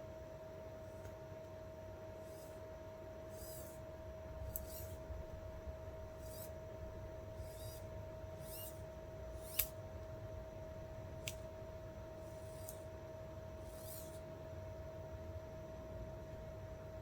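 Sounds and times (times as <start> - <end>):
high-pitched electrical hum: 0.0 - 17.0
small sharp clicks: 4.4 - 5.0, 9.4 - 10.1, 11.2 - 11.5, 12.3 - 12.9.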